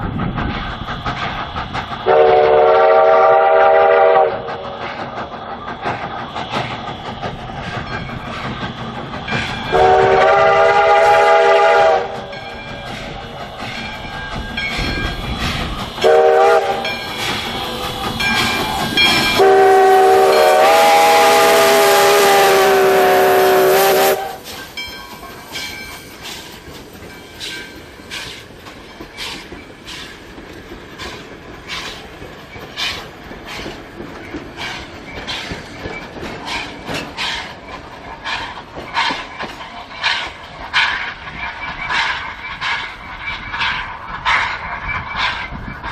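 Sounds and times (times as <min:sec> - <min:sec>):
train wheels clicking over rail joints: 0:00.0 - 0:45.9
locomotive horn blasts: 0:02.1 - 0:04.5, 0:09.7 - 0:12.2, 0:16.0 - 0:16.9, 0:19.3 - 0:24.4.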